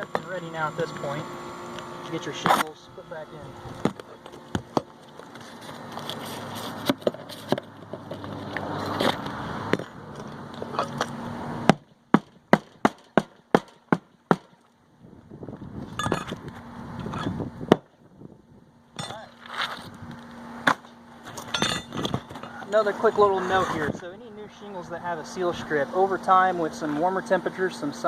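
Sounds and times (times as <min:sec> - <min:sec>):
shingles scraping: 0:03.8 - 0:09.2
hatchet hammering nails: 0:11.7 - 0:14.6.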